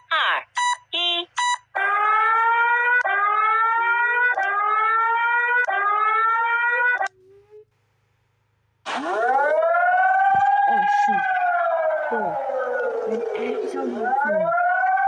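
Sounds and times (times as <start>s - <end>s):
rising electronic alert whoop: 8.9s - 15.0s.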